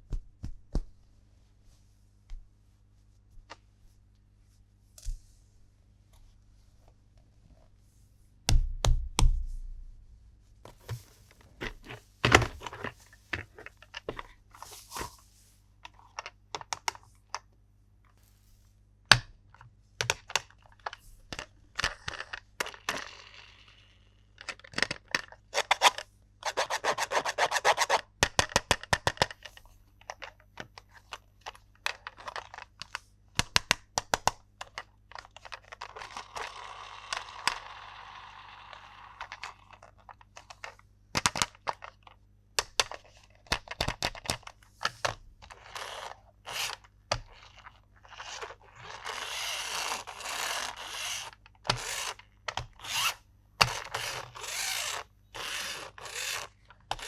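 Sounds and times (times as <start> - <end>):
plastic toy parts clicking: 45.4 - 57.0.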